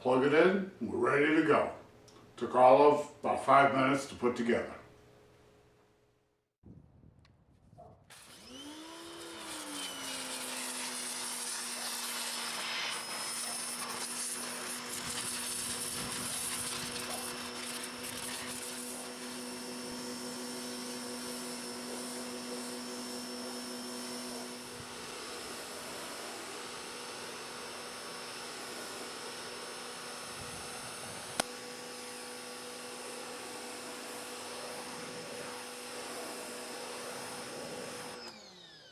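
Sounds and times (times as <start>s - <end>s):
pressure washer motor hum: 8.1s - 38.9s
loud water hiss: 9.4s - 19.4s.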